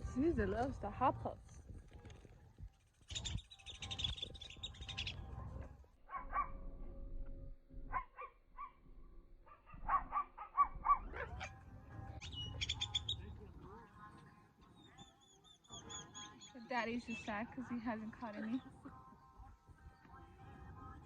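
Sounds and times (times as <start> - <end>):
birds chattering and calling: 3.0 - 6.6, 9.5 - 13.6, 14.7 - 21.0.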